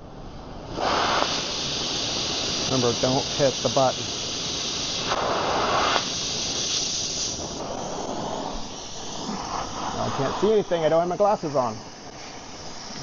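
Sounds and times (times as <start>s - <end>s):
cutting torch flame hissing: 0.0s - 13.0s.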